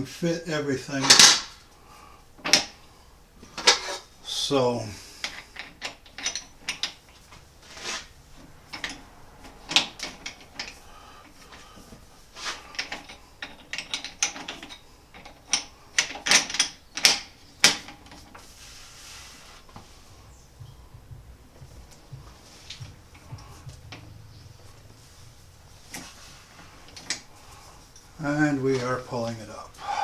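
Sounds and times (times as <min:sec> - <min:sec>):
metallic clicks of steel parts: 0:01.0 - 0:01.7, 0:05.2 - 0:07.4, 0:08.0 - 0:11.9, 0:12.7 - 0:18.5, 0:21.8 - 0:28.2.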